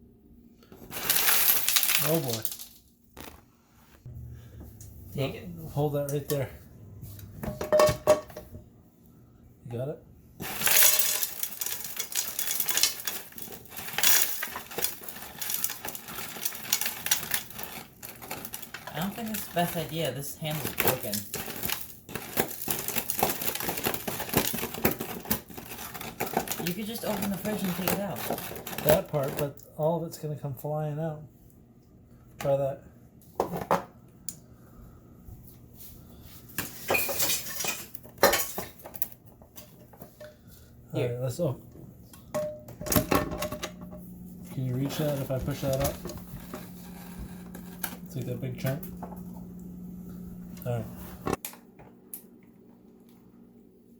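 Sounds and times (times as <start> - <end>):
ice cubes clattering in plastic bin: 0.8 - 3.3, 10.4 - 29.6, 44.5 - 48.8.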